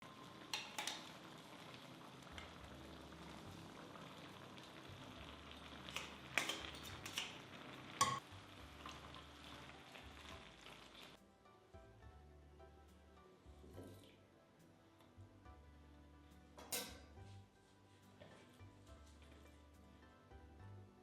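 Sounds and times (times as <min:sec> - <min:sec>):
food sizzling in a frying pan: 0:00.0 - 0:11.2.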